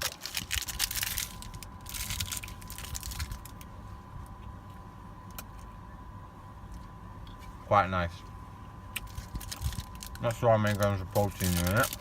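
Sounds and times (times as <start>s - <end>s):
plastic wrapper crinkling and tearing: 0.0s - 3.6s, 9.0s - 12.0s
low background hum: 0.0s - 12.0s.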